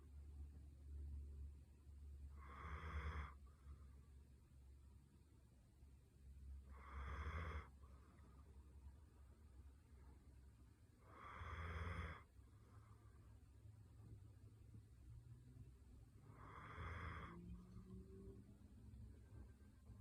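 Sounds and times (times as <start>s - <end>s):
faint slow snoring: 2.3s - 3.4s, 6.6s - 7.8s, 11.0s - 12.3s, 16.2s - 18.4s.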